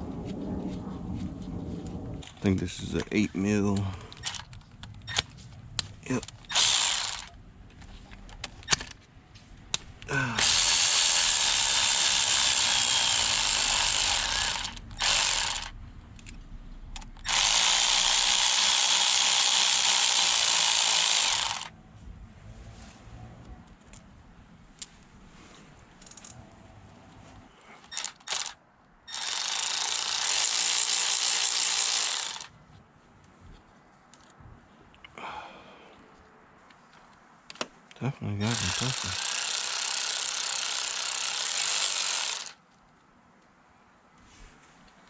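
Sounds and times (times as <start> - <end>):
power ratchet spinning out bolts: 4.1 - 5.3, 6.2 - 7.3, 10.4 - 15.7, 17.0 - 21.7, 27.9 - 32.5, 38.5 - 42.6.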